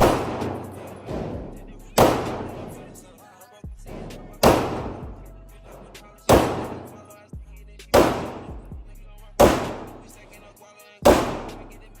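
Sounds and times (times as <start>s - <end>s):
echoing gunshots: 0.0s - 3.2s, 3.9s - 7.2s, 8.0s - 8.7s, 9.4s - 10.3s, 11.0s - 11.9s
background music: 0.0s - 12.0s.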